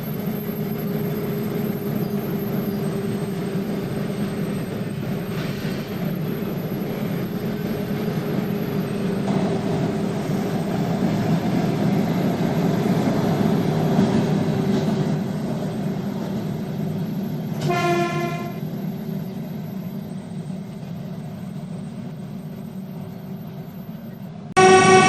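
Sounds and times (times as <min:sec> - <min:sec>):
train rumbling: 0:00.0 - 0:25.0
train horn toot: 0:17.6 - 0:18.6, 0:24.6 - 0:25.0.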